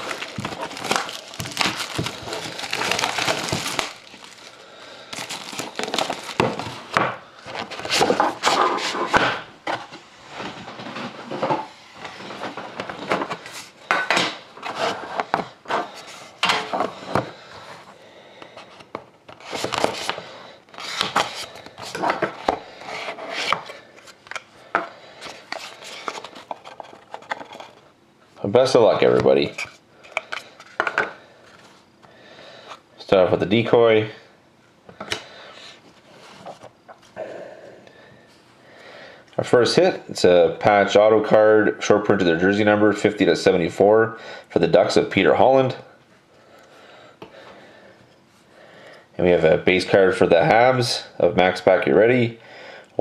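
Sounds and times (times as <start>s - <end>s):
plastic wrap crinkling: 0.0s - 8.7s
cardboard and cards rustling: 0.0s - 17.9s, 18.5s - 24.5s, 25.2s - 27.8s.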